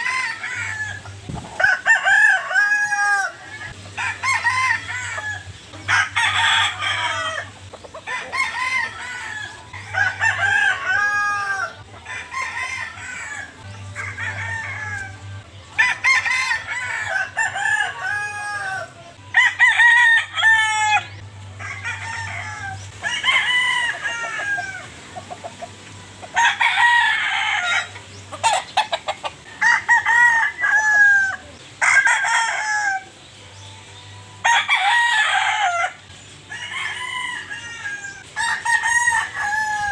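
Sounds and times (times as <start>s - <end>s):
roosters crowing: 0.0s - 39.9s.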